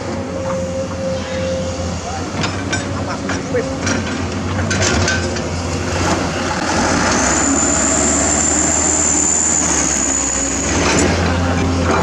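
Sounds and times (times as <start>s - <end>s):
heavy machinery engine hum: 0.0s - 12.0s
high-pitched whine: 6.4s - 12.0s.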